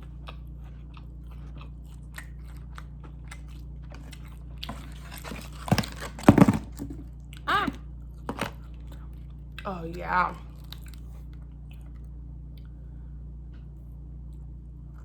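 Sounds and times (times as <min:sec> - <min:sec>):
chewing food: 0:00.0 - 0:12.8.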